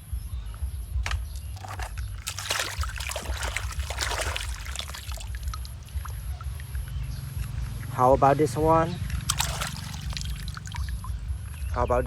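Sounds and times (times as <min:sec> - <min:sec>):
steady low hum: 0:00.0 - 0:08.0, 0:09.0 - 0:11.8
water splashing and trickling: 0:01.0 - 0:07.7, 0:08.7 - 0:11.6.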